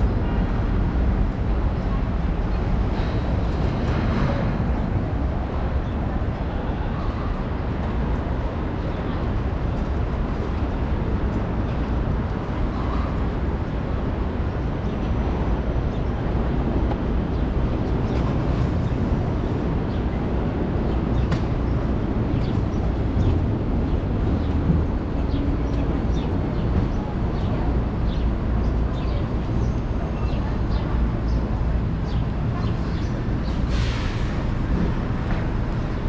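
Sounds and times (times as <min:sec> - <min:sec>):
low rumble of traffic: 0:00.0 - 0:36.0.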